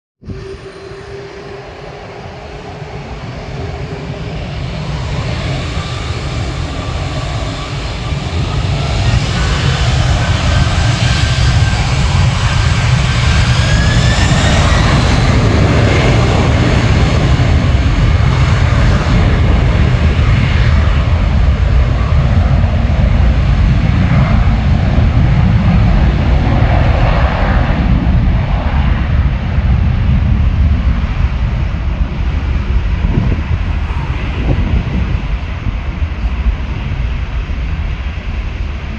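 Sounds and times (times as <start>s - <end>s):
whining engine tones: 0.2s - 17.8s, 33.0s - 37.6s
jet engines rumbling: 0.2s - 38.9s.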